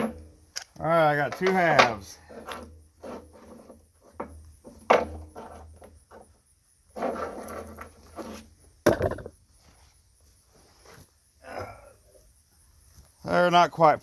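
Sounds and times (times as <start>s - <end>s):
objects rustling and scraping: 0.0s - 11.4s
sharp knocks: 8.8s - 9.3s.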